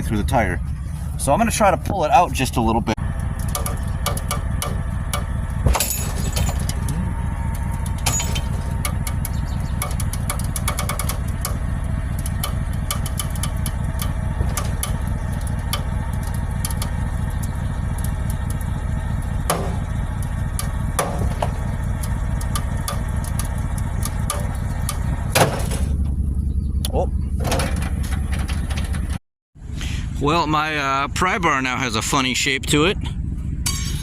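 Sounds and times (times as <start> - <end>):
engine idling: 0.0 - 34.0
loud metal clank: 3.5 - 6.9, 7.8 - 11.6, 19.5 - 20.0, 20.6 - 21.8, 25.3 - 26.0, 27.4 - 29.2, 33.6 - 34.0
metal pry bar clicks and knocks: 8.0 - 11.6.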